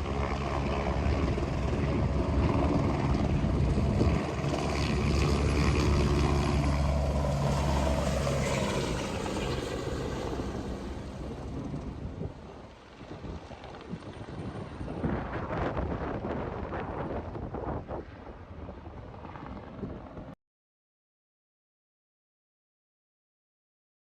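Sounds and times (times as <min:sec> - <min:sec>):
helicopter rotor and engine: 0:00.0 - 0:20.4.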